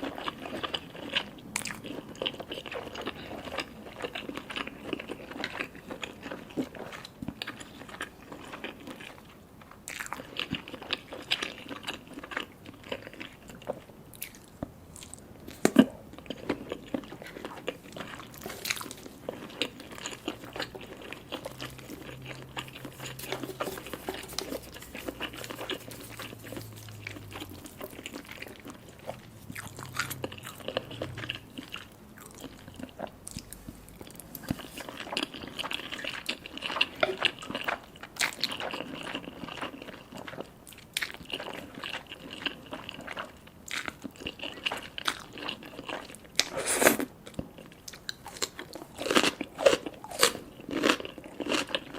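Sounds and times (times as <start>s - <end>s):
chewing: 0.0s - 51.9s
slurping noodles: 22.6s - 31.3s, 46.4s - 47.1s.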